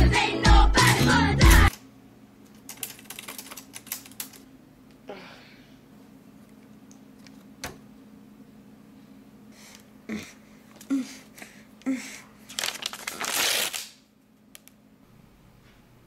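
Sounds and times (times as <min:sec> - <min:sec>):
music: 0:00.0 - 0:01.7
faint steady hum: 0:00.0 - 0:16.0
typewriter keys clicking: 0:02.7 - 0:04.4.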